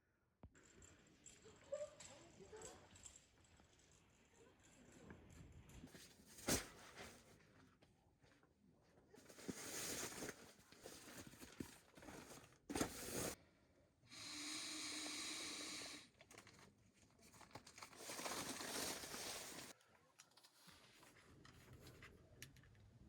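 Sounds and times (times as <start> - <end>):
rustling and crinkling: 5.8 - 13.4, 16.2 - 22.4.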